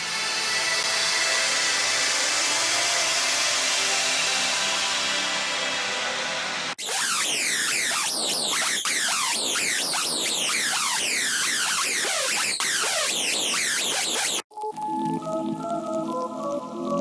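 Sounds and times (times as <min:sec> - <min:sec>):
synthesizer falling pitch sweeps: 0:06.8 - 0:14.4
synthesizer hiss: 0:06.8 - 0:14.4.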